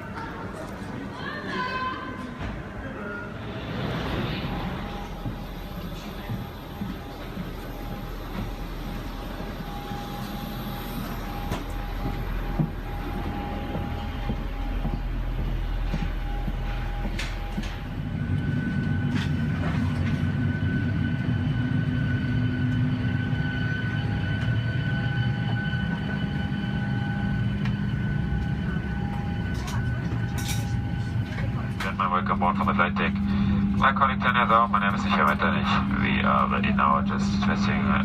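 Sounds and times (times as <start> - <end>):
aircraft cabin air conditioning: 1.6 - 38.0
steady high hum: 2.8 - 38.0.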